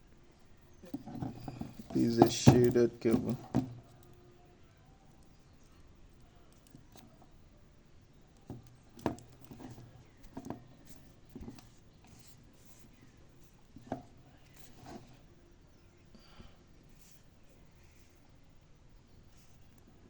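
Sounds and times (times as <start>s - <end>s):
soft knocks and clicks of cable: 0.8s - 4.2s, 8.4s - 13.0s, 13.8s - 15.2s.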